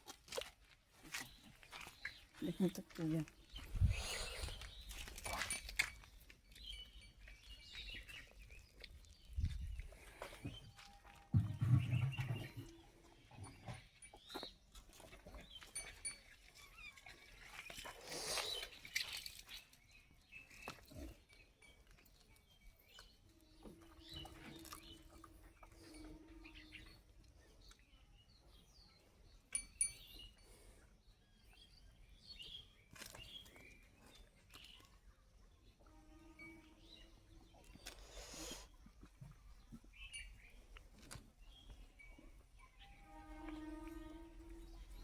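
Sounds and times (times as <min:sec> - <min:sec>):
knocks and rustles: 0:11.3 - 0:12.8.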